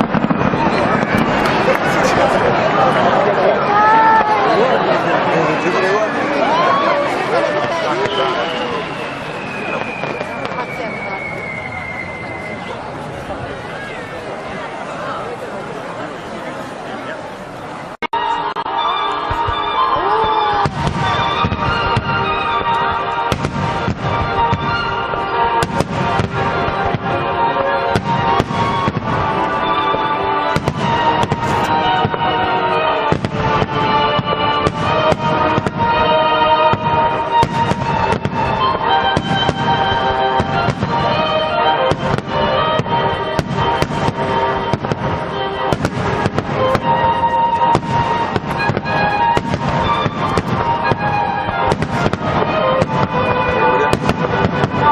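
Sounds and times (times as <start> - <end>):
fireworks bursting: 0.0 - 15.8, 18.2 - 54.9
music playing: 18.1 - 54.9.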